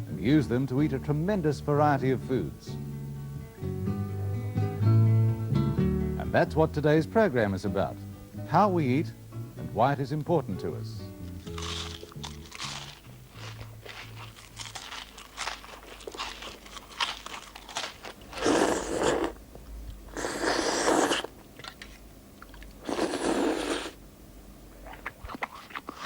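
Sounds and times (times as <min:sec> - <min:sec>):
crunching and chewing crisp food: 0:11.3 - 0:24.0, 0:24.7 - 0:26.0.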